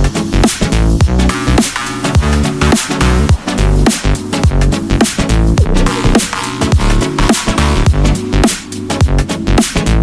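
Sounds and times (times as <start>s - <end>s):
electronic music with heavy bass: 2.1s - 8.9s.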